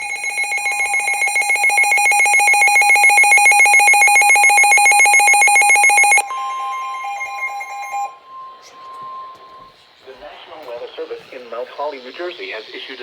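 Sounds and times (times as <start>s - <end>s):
electronic alert tone trilling: 0.0s - 9.6s
two-tone alert signal: 0.0s - 9.8s.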